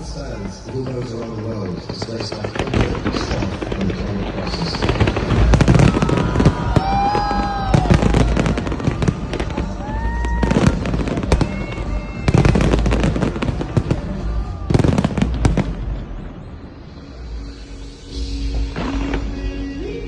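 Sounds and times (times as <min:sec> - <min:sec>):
whistling firework shells: 0:00.0 - 0:16.0
fireworks cracks and bangs: 0:00.0 - 0:17.2
music: 0:00.0 - 0:20.0.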